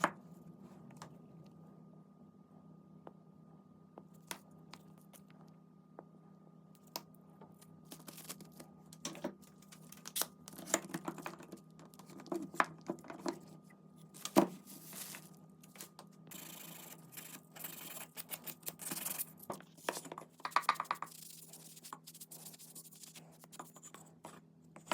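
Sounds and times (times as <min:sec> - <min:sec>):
objects being handled: 0:07.4 - 0:16.1.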